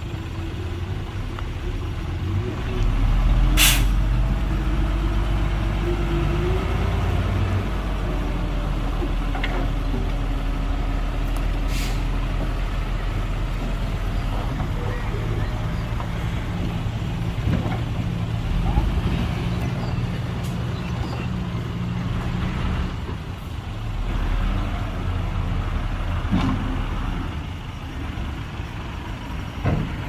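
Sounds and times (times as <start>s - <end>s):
diesel machinery engine running: 0.0s - 30.0s
air brake hiss: 3.6s - 4.0s, 11.7s - 12.1s.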